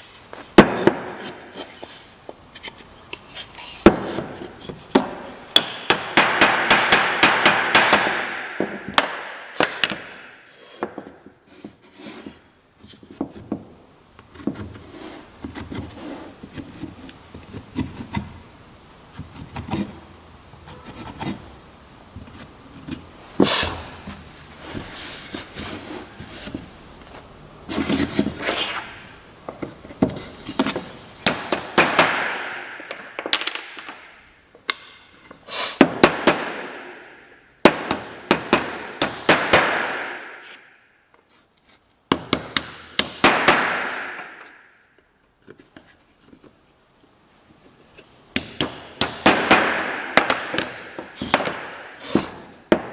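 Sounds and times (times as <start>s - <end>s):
scraping on wood: 0.3s - 5.4s, 10.6s - 18.4s, 22.2s - 32.1s.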